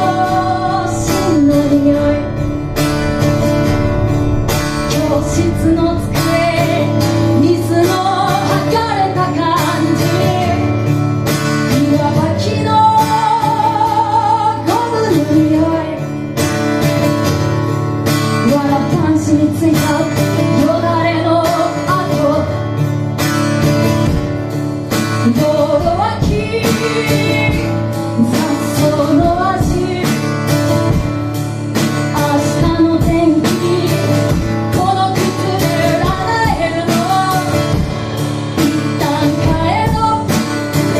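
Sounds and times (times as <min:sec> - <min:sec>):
woman singing: 0:00.0 - 0:16.5, 0:18.4 - 0:22.7, 0:25.1 - 0:31.1, 0:31.8 - 0:40.9
drums: 0:00.0 - 0:40.9
strummed guitar: 0:00.0 - 0:40.9.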